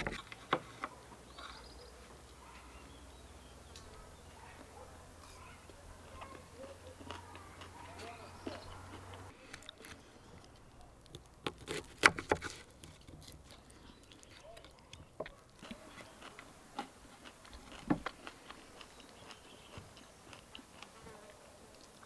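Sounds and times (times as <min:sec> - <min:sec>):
person chewing: 0:06.2 - 0:22.0.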